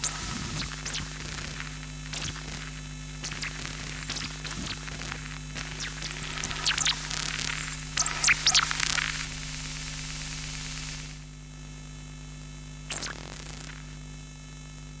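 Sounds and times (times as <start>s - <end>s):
static hiss: 0.0s - 11.3s
electrical hum: 0.0s - 14.8s.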